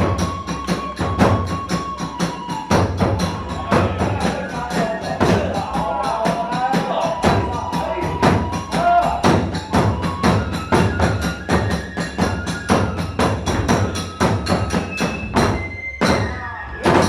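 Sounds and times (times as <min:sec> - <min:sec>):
drum strikes: 0:00.0 - 0:17.0
flute playing held notes: 0:00.0 - 0:17.0
hand cymbal strikes: 0:00.0 - 0:17.0.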